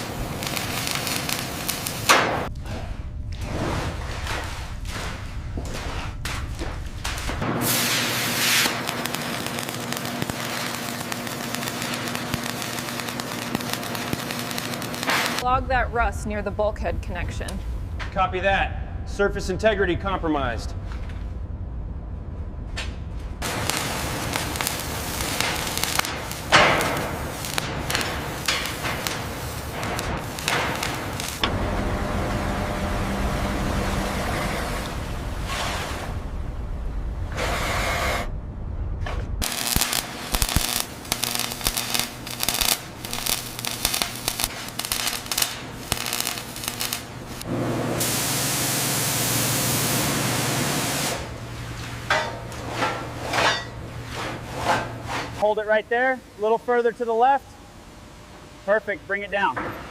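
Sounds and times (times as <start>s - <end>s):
low hum: 0.0s - 7.6s, 8.7s - 48.4s
steady hiss: 7.6s - 15.4s, 23.4s - 31.4s, 39.4s - 52.0s
spraying hiss: 48.0s - 51.3s.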